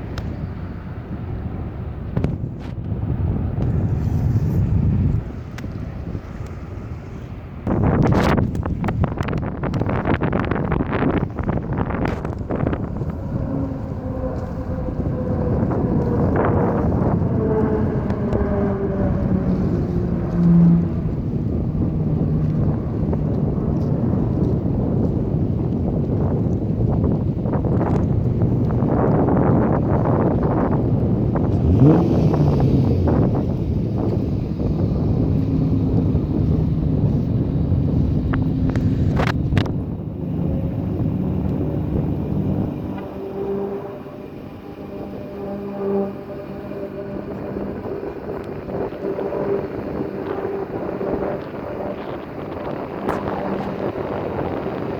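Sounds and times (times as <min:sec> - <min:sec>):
aircraft engines rumbling: 0:00.0 - 0:54.9
wind buffeting microphone: 0:00.0 - 0:54.9
faint tones falling in pitch: 0:38.4 - 0:54.4.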